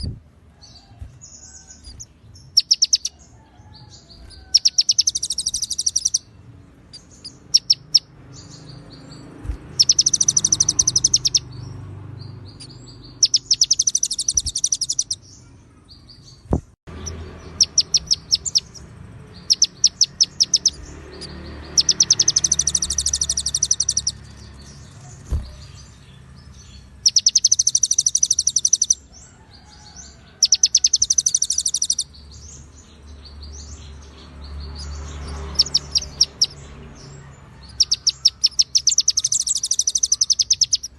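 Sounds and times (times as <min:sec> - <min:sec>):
bird chirps: 0:00.0 - 0:40.9
songbird rapid high trills: 0:04.2 - 0:06.3, 0:09.4 - 0:11.8, 0:12.5 - 0:15.3, 0:17.0 - 0:29.1, 0:30.4 - 0:32.1, 0:37.7 - 0:40.9.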